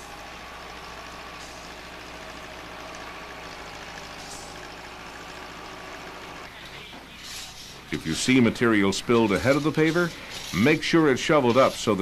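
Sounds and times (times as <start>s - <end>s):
heavy diesel engines droning: 0.0s - 12.0s.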